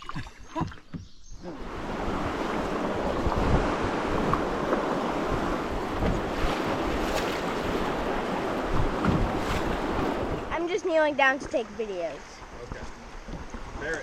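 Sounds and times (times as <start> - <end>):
wind buffeting microphone: 0.5 - 11.8
river water rushing: 1.5 - 12.6.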